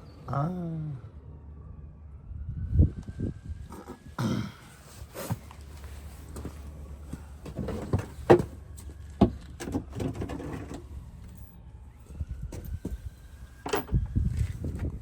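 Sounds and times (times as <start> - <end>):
tools and parts knocking and rattling: 7.4 - 8.6, 9.2 - 10.8, 13.6 - 14.1.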